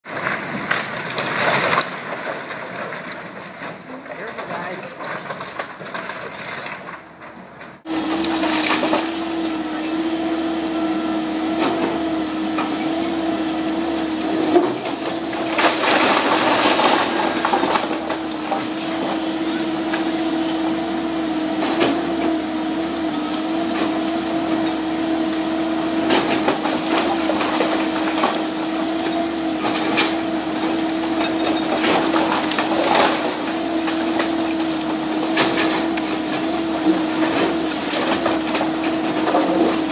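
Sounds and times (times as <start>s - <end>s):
wood cracking and knocking: 0.0s - 9.2s, 14.3s - 20.1s, 26.0s - 39.9s
machine engine humming: 7.8s - 39.9s.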